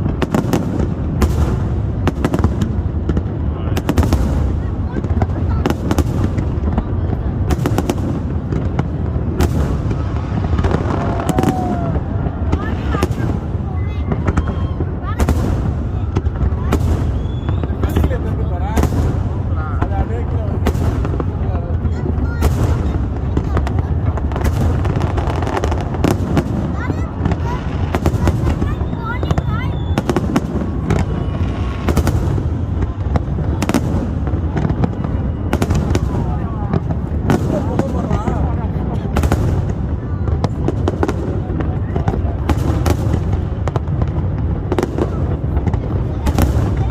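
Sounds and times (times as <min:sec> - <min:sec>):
fireworks bursting: 0:00.0 - 0:46.9
rumble of booms and crackle: 0:00.0 - 0:46.9.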